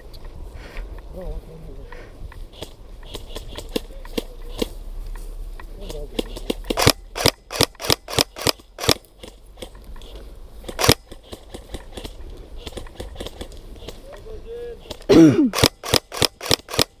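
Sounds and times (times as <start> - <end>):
airsoft guns firing: 2.5 - 4.8, 5.8 - 9.7, 10.6 - 14.0, 14.8 - 17.0
distant shot clicks: 2.5 - 4.8, 5.8 - 9.8, 10.6 - 14.0, 14.8 - 17.0.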